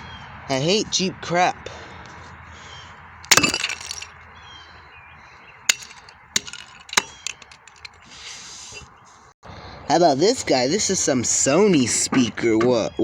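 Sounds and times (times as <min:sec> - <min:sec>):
hard objects knocking: 0:03.3 - 0:04.1, 0:05.7 - 0:08.0.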